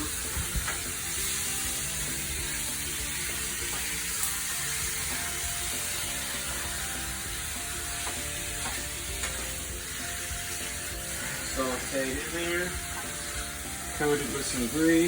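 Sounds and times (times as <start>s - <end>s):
background music: 0.0s - 15.0s
chicken sizzling in a pan: 0.0s - 15.0s.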